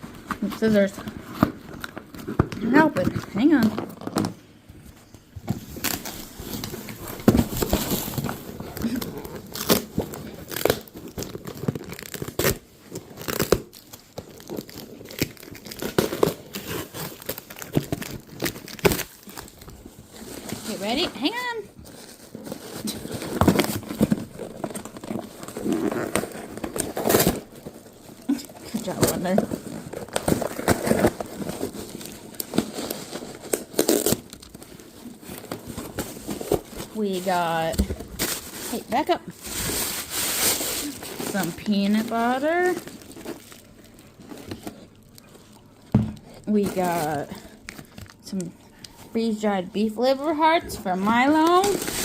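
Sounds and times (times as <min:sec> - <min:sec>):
packaging crinkling and rustling: 0:00.0 - 0:52.0
cardboard and paper tearing: 0:05.5 - 0:45.1, 0:50.0 - 0:52.0.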